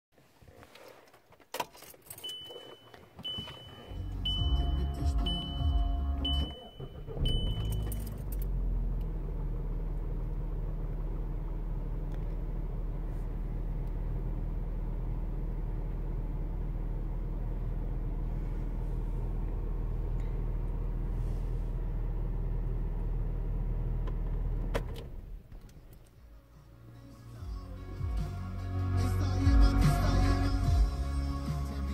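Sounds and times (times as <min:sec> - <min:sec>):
car engine cranking and idling: 0:00.2 - 0:31.9
car key rattling and clicking: 0:01.5 - 0:03.9, 0:06.2 - 0:08.4
high warning chime beeping: 0:02.1 - 0:08.3.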